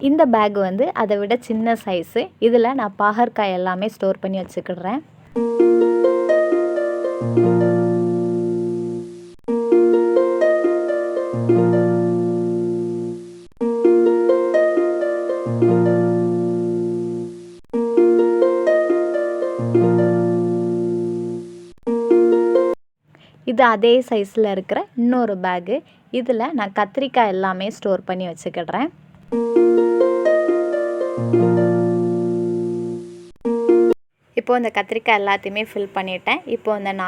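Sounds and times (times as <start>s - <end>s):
plucked harp-like tune: 5.4s - 22.8s, 29.3s - 34.0s.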